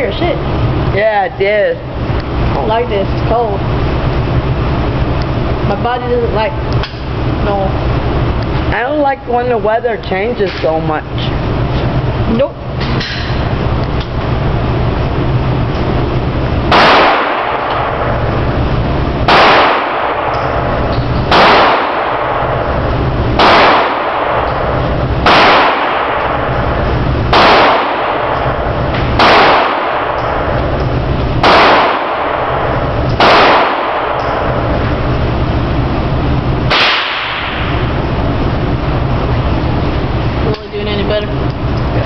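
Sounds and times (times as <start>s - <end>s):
steady low hum: 0.0s - 42.0s
gunshots ringing in a room: 16.7s - 18.4s, 19.2s - 30.8s, 31.4s - 35.1s, 36.7s - 38.1s.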